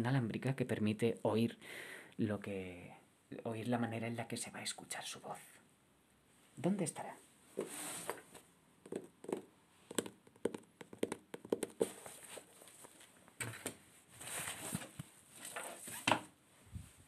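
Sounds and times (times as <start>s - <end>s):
soft rustling: 7.5s - 8.5s, 11.7s - 17.0s.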